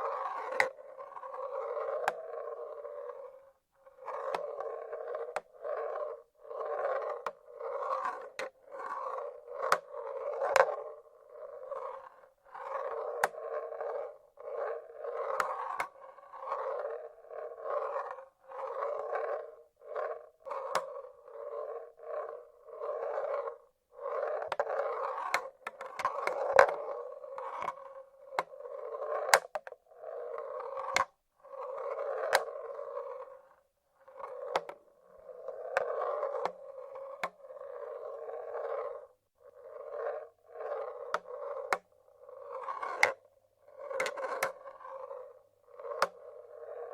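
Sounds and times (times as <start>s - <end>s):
marbles rolling on wooden tracks: 0.0s - 46.9s
marbles clicking against wood: 43.8s - 45.0s, 45.7s - 46.9s.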